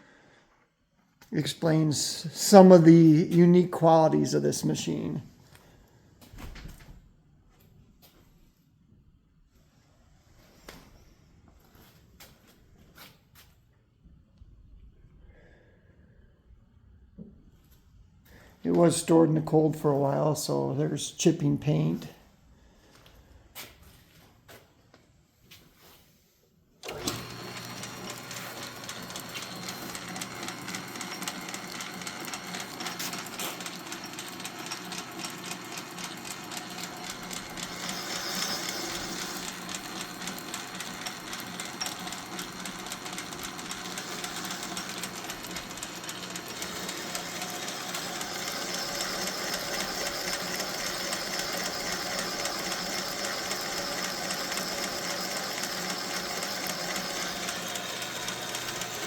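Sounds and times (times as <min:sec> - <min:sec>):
metal lathe running: 0:26.8 - 0:59.0.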